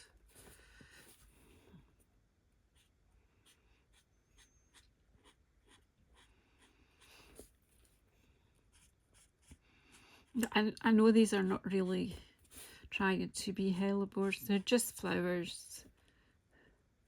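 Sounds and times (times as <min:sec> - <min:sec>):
marker scratching on cardstock: 0:02.8 - 0:07.5.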